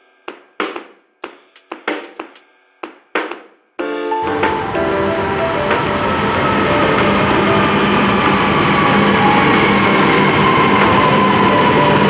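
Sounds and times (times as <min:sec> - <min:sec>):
train rumbling: 0:04.2 - 0:12.0.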